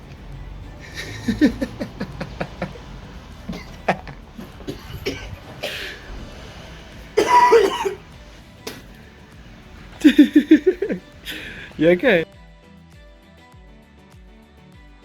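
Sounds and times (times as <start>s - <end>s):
music: 0.0s - 15.0s
man coughing and spluttering: 3.4s - 9.1s, 9.9s - 12.2s.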